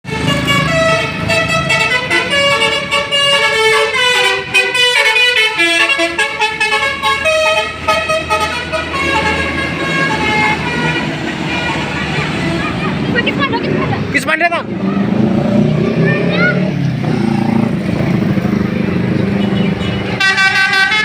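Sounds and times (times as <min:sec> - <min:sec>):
multi-tone bus horn playing tune: 0:00.0 - 0:12.8, 0:19.4 - 0:21.0
bus engine running: 0:00.1 - 0:21.0.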